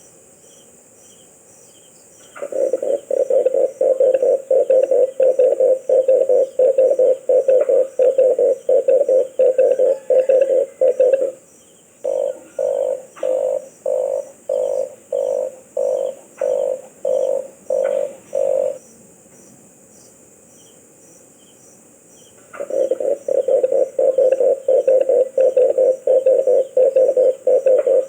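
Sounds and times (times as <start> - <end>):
dove cooing: 2.4 - 11.4, 12.0 - 18.8, 22.5 - 28.0.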